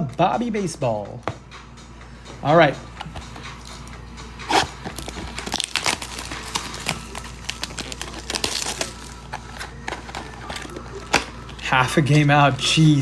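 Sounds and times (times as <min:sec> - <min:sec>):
foil wrapper crinkling and tearing: 0:04.5 - 0:11.7.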